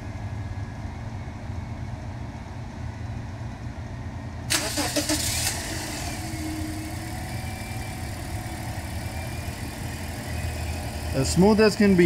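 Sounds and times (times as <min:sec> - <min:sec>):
car engine cranking and idling: 0:04.5 - 0:12.0.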